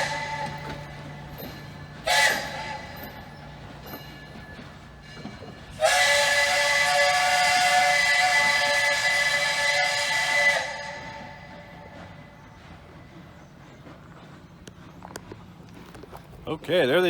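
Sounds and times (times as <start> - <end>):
steam locomotive whistle blasts: 0.0 - 3.7, 5.0 - 12.2.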